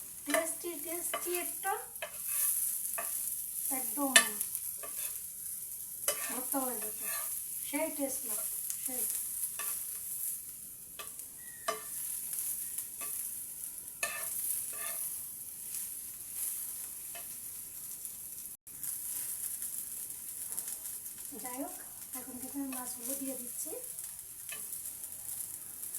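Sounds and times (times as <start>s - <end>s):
fish sizzling in hot oil: 0.0s - 25.9s
utensil clicking against pan: 4.1s - 5.2s, 6.1s - 7.4s, 24.1s - 24.9s.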